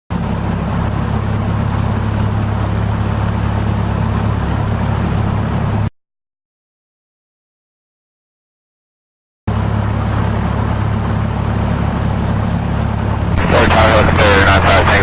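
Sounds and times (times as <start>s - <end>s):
small plane engine droning: 0.1s - 5.9s, 9.5s - 15.0s.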